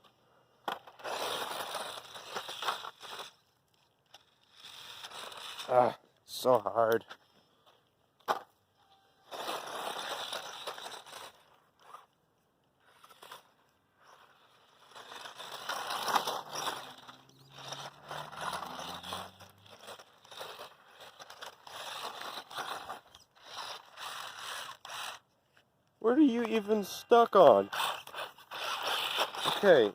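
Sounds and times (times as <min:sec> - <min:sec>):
toy truck tires spinning in dirt: 0:00.0 - 0:07.2, 0:09.2 - 0:29.9.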